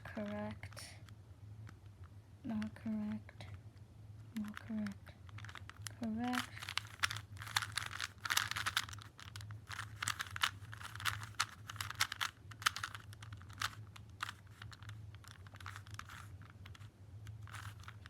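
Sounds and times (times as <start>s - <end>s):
plastic puzzle cube clicking: 4.4s - 18.0s.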